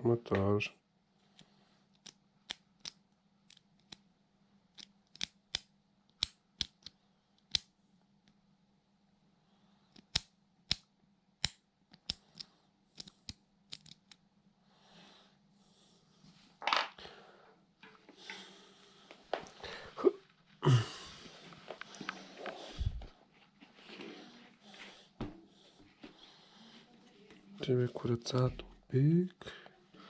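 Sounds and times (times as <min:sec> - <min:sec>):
sharp clicks of small parts: 0:01.9 - 0:04.1, 0:04.7 - 0:07.7, 0:09.9 - 0:14.2
rustling and scraping: 0:21.4 - 0:25.0.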